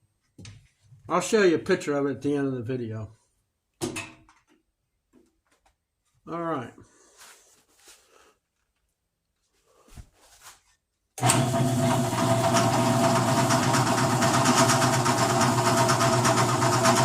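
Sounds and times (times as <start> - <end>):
electric drill motor humming: 11.2 - 17.0.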